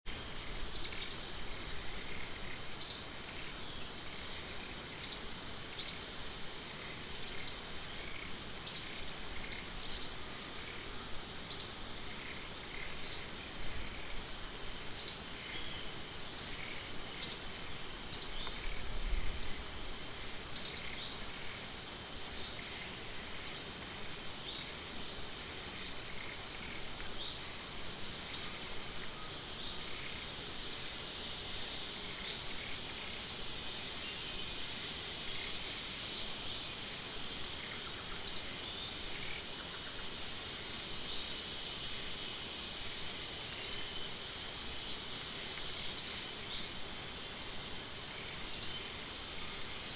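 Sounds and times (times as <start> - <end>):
high-pitched insect drone: 0.1 - 49.9.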